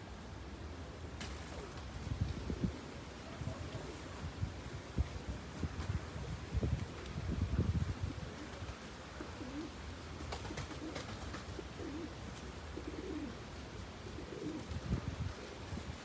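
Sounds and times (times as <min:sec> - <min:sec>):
dove cooing: 0:08.4 - 0:15.5.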